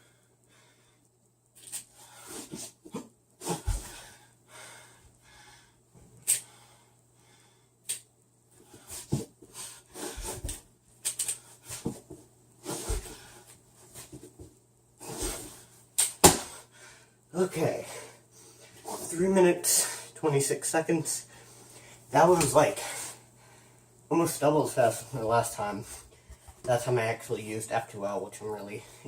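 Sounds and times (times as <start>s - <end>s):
heavy breathing: 3.4s - 5.8s.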